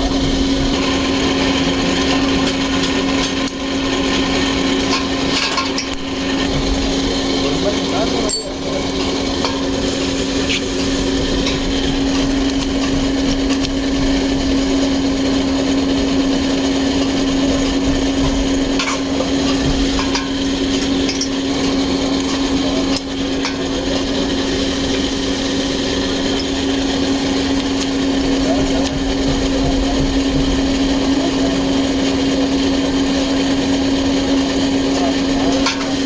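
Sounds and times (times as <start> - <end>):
machine motor humming: 0.0 - 36.0
short bursts of high hiss: 9.8 - 11.2, 24.3 - 25.9.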